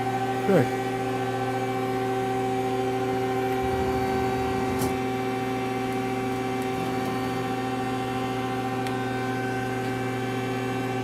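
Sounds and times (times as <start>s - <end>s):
lathe humming: 2.9s - 8.5s
faint low rumble: 3.4s - 5.2s.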